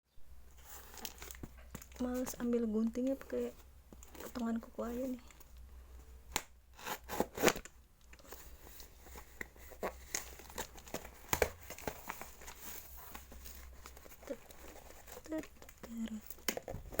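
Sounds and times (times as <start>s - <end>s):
packaging crinkling and tearing: 0.6s - 2.0s, 6.3s - 17.0s.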